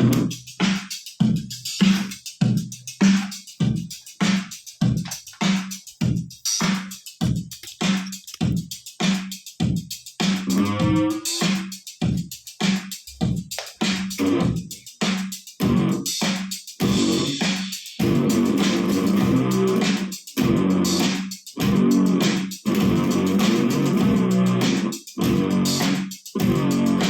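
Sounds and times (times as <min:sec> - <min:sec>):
staccato electric bass notes: 0:20.4 - 0:21.0, 0:21.6 - 0:27.0.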